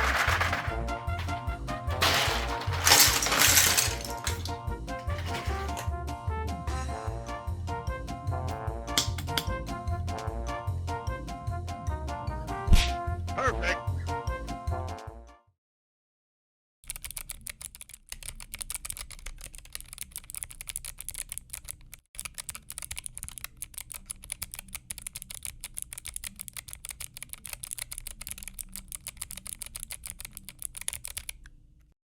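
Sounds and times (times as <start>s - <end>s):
fast mechanical keyboard typing: 0.0s - 0.7s, 16.8s - 31.5s.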